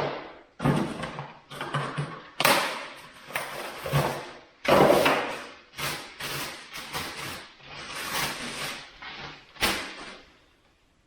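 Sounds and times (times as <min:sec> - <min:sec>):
scraping and rustling of packaging: 0:06.0 - 0:10.4.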